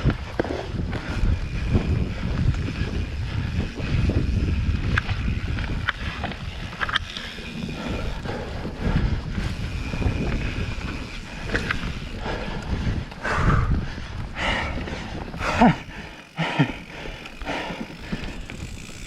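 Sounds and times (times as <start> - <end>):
bike clicks and rattles: 0.0 - 19.0
bike tyre noise on dirt: 0.0 - 19.0
wind rumble on microphone: 0.0 - 19.0.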